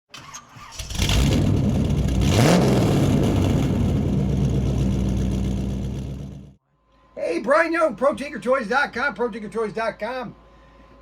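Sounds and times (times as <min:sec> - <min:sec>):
car engine revving: 0:00.9 - 0:06.6.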